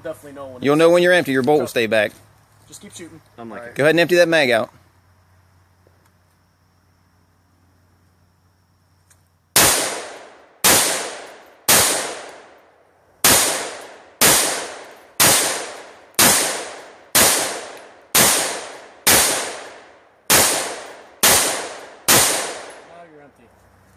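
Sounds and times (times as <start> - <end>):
rifle shots with echo: 9.6 - 12.6, 13.2 - 22.9.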